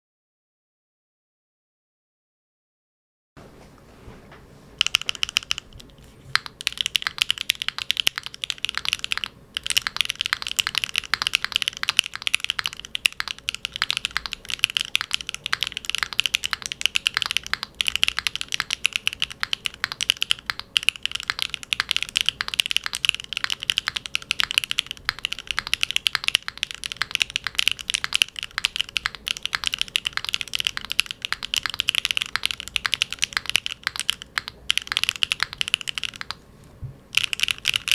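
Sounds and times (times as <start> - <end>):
mechanical keyboard typing: 4.8 - 36.4, 37.1 - 37.9.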